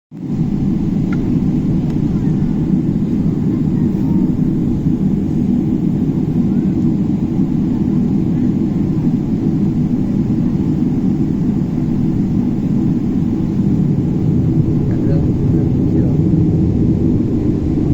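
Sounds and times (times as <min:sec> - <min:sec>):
airliner cabin engine rumble: 0:00.1 - 0:17.9.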